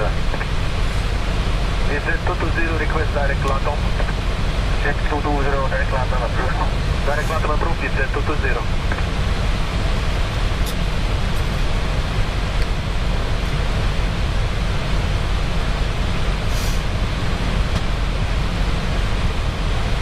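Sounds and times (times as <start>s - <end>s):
airflow and engine noise: 0.0s - 20.0s
short hiss: 16.5s - 16.9s.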